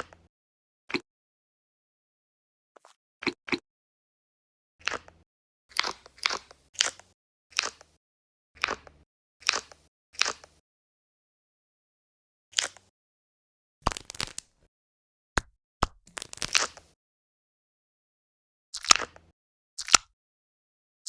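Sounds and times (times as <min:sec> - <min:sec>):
stress toys squishing: 0:05.7 - 0:08.0, 0:13.8 - 0:14.6, 0:15.4 - 0:17.0, 0:18.8 - 0:19.2, 0:19.8 - 0:20.1.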